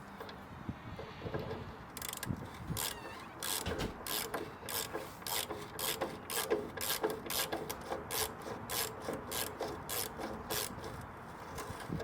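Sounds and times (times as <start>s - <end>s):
ratchet wrench clicking: 2.0s - 11.0s.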